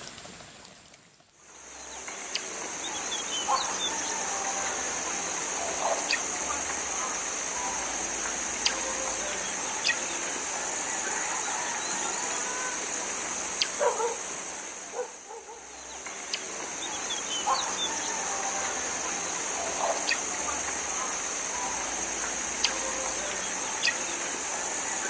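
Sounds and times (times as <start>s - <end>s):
insects droning: 1.4s - 25.0s
chickens clucking: 2.0s - 14.2s, 14.9s - 25.0s.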